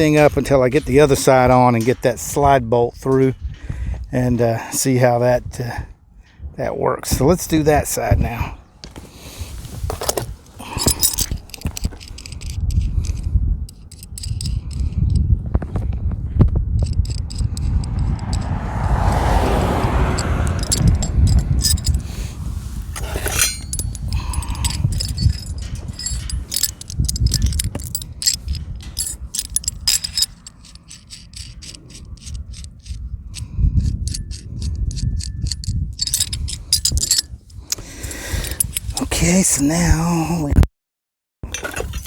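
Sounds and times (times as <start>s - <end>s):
scraping rustle: 8.9s - 15.0s, 20.2s - 39.2s
metal latch clinking on gate: 10.2s - 15.2s, 20.1s - 22.1s, 22.9s - 39.4s, 41.5s - 42.0s
low rumble: 12.2s - 37.9s.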